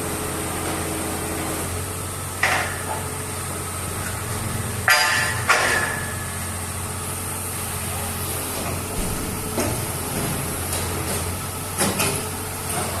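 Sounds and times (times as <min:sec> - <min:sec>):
sharp metallic clanks: 0:04.8 - 0:06.5.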